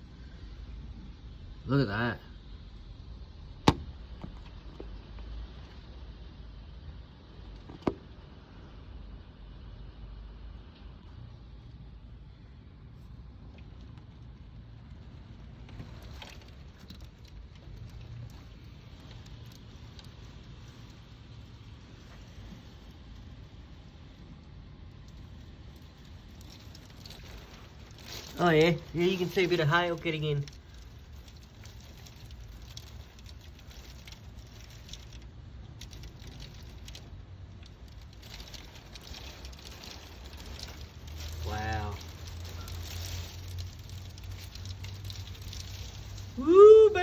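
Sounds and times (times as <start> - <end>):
hailstorm with rain: 10.0 - 47.0
hailstones ticking: 13.5 - 47.0.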